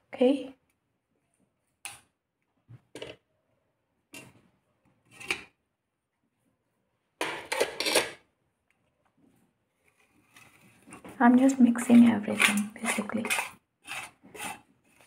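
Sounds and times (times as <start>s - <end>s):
spoon scraping against a bowl: 11.8s - 15.0s.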